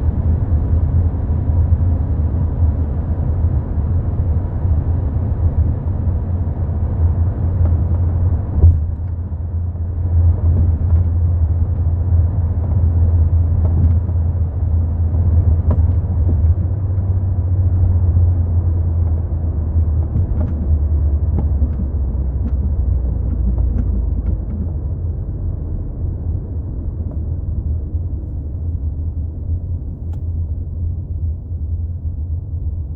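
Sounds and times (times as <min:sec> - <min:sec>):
car driving rumble: 0:00.0 - 0:32.9.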